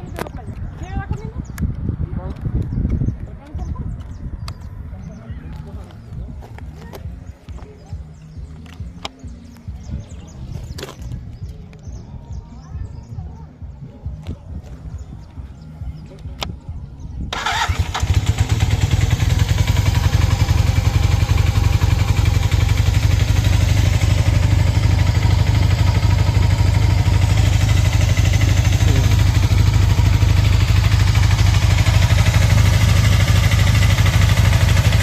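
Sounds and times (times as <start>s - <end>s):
motorcycle engine idling: 17.3s - 35.0s.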